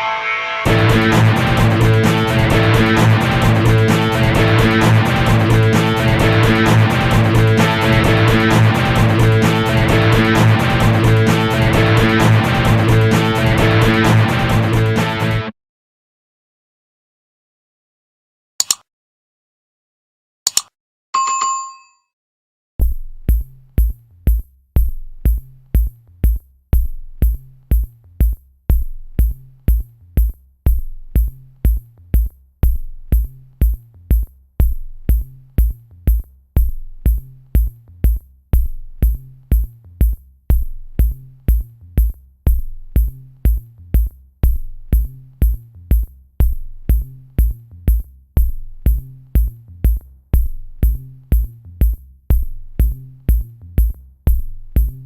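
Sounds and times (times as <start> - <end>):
electronic music: 0.0 - 15.5
drum machine beat: 0.7 - 15.5, 22.8 - 55.0
low bass line: 0.7 - 15.5, 32.6 - 55.0.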